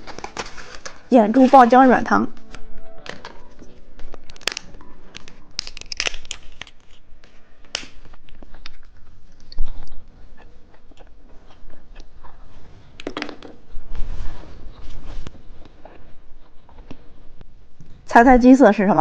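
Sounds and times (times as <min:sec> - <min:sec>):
plastic wrapper crinkling: 0:00.0 - 0:02.6, 0:03.2 - 0:10.6.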